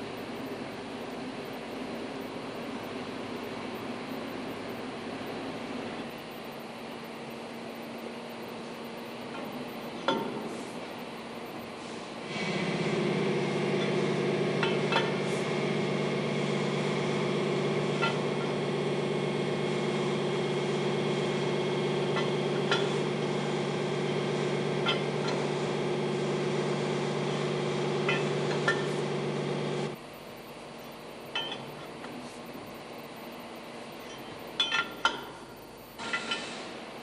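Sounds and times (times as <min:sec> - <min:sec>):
machine motor humming: 0:10.6 - 0:31.3.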